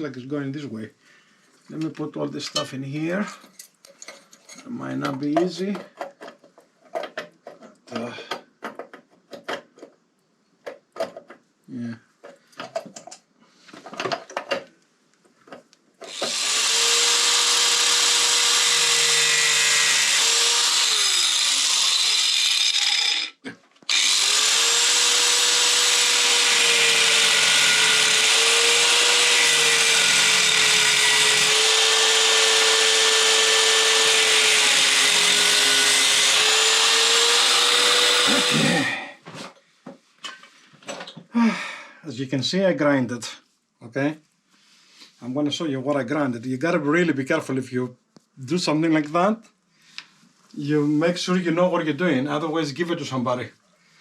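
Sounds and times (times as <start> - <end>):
power grinder grinding metal: 16.0 - 39.0.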